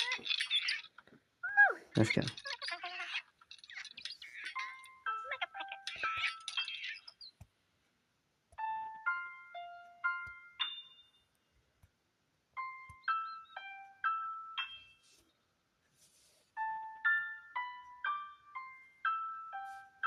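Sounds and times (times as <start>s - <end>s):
plinking keyboard melody: 8.5s - 11.3s, 12.6s - 15.2s, 16.6s - 20.0s.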